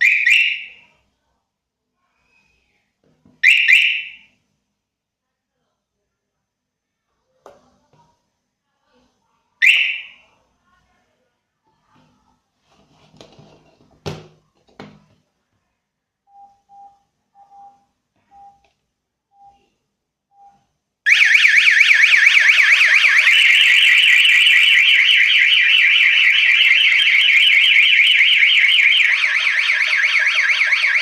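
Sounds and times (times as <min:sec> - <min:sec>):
electronic alarm siren warbling: 0:21.1 - 0:31.0.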